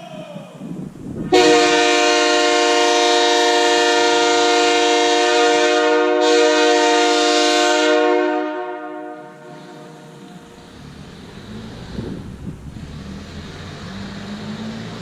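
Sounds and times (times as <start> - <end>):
train horn chord: 1.3 - 10.6.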